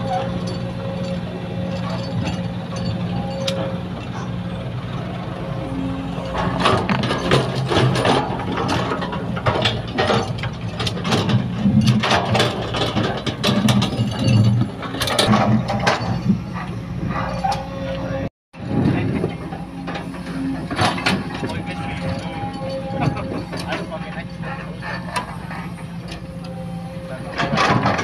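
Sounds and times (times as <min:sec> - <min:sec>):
excavator diesel engine: 0:00.0 - 0:28.0
metallic clanks and knocks: 0:06.2 - 0:17.7, 0:18.8 - 0:28.0.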